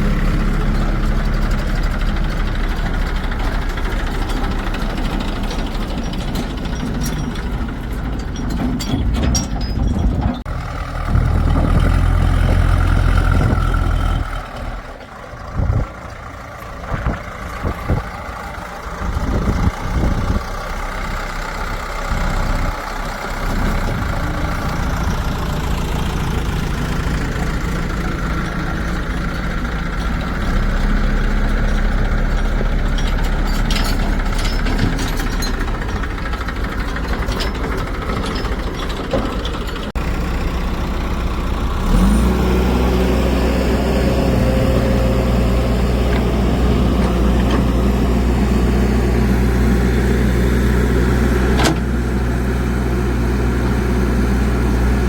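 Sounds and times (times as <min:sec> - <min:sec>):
diesel engine running: 0:00.0 - 0:55.0.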